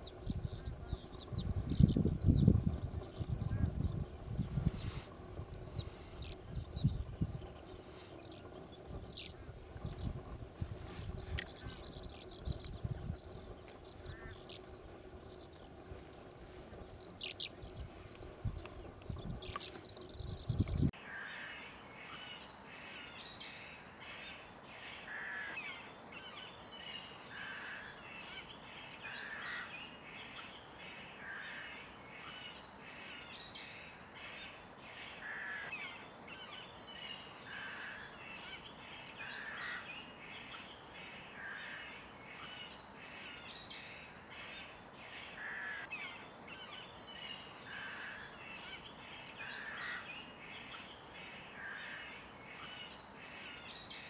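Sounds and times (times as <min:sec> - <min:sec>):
lower repeating bird call: 0:00.0 - 0:20.8
birds chirping and singing: 0:00.0 - 0:20.9
faint steady hiss: 0:00.0 - 0:21.0.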